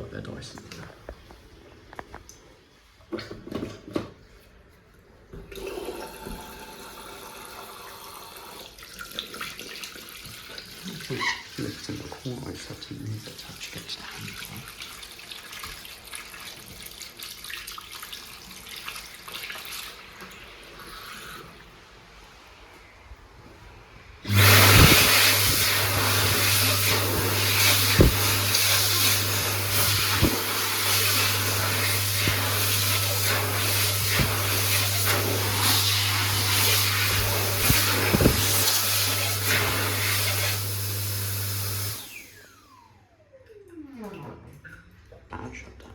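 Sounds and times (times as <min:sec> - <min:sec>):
hand dryer blowing: 0:24.2 - 0:42.6.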